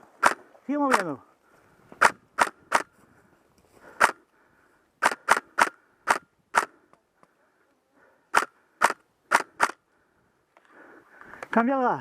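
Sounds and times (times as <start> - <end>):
airsoft rifle sharp snaps: 0.2 - 1.1, 2.0 - 2.9, 5.0 - 6.7.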